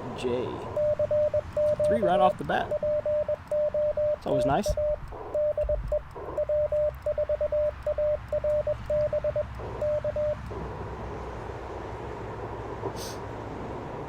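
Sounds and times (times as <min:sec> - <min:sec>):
morse code tones: 0:00.7 - 0:10.6
radio band noise hiss: 0:04.2 - 0:05.3, 0:06.1 - 0:06.5, 0:09.4 - 0:13.4.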